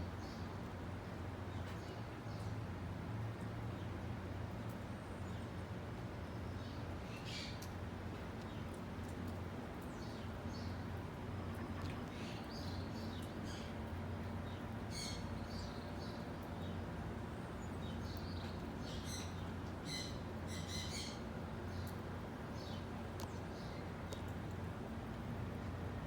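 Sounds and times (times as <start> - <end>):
small birds chirping: 11.5 - 16.8, 17.4 - 24.4.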